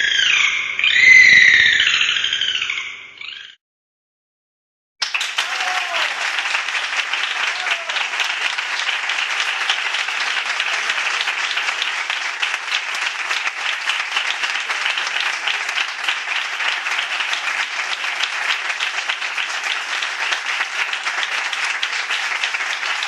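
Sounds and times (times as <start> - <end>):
crowd applauding: 5.0 - 23.0.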